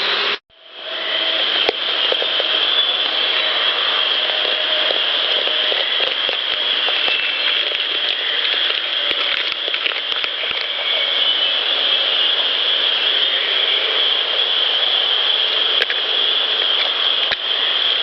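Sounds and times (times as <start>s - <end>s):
high insect drone: 0.6s - 18.0s
clicks and crackles on microphone: 4.0s - 11.2s, 15.8s - 17.5s.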